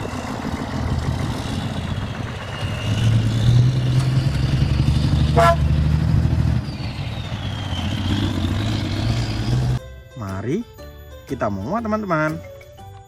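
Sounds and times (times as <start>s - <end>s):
vehicle engine running: 0.0s - 9.8s
short horn toot: 5.3s - 5.7s.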